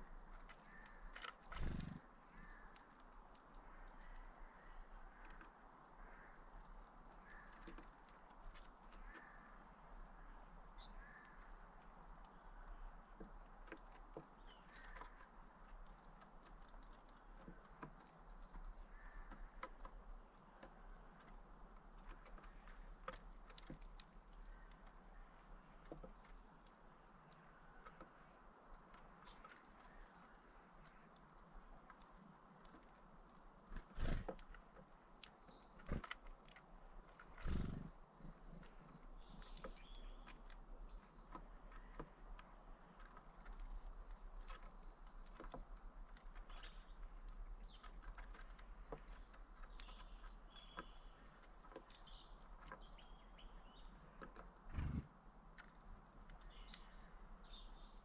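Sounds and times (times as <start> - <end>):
small birds chirping: 0.0 - 58.0
tapping and pecking clicks: 11.4 - 56.8.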